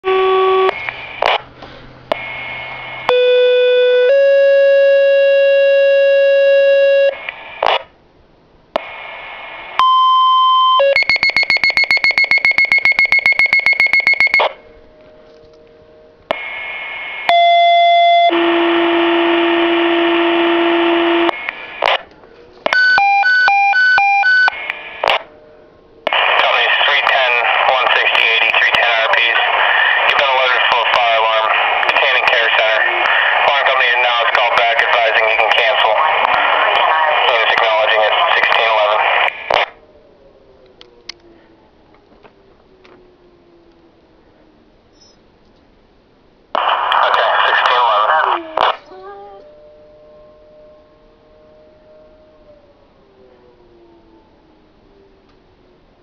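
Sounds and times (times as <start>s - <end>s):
radio hiss: 0.6s - 3.2s, 7.1s - 8.0s, 8.8s - 9.8s, 16.3s - 17.3s, 18.3s - 22.1s, 24.5s - 25.3s, 26.1s - 39.8s, 46.6s - 49.3s
alternating beeps: 3.0s - 7.2s, 9.8s - 14.7s, 17.2s - 18.6s, 22.7s - 24.6s
two-tone paging tones: 9.8s - 14.6s.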